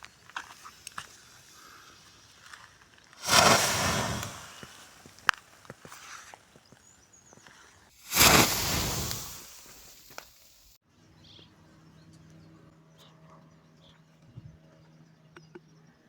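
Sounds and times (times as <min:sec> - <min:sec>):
small crackles: 0:00.0 - 0:10.8
loud whoosh of ignition: 0:03.2 - 0:05.0, 0:08.0 - 0:10.8.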